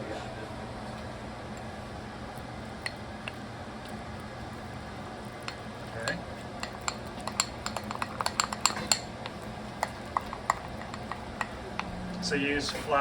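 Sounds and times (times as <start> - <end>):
spoon clinking against bowl: 5.4 - 12.0.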